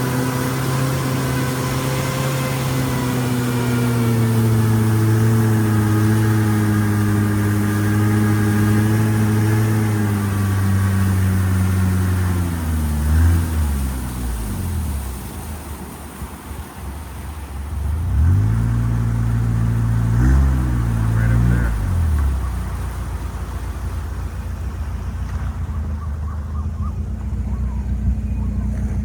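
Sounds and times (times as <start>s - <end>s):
boat engine running: 0.0s - 29.0s.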